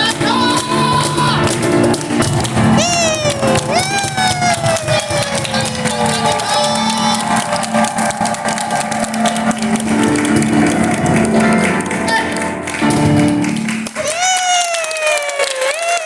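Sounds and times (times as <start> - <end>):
person cheering: 0.0 - 1.6, 2.7 - 9.5, 11.8 - 12.6, 13.8 - 16.0
cajon percussion: 0.0 - 16.0
piano: 0.0 - 16.0.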